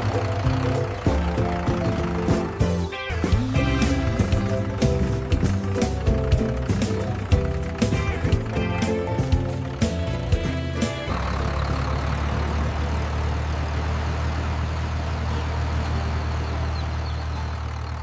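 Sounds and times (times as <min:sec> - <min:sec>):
tractor engine droning: 0:00.0 - 0:18.0.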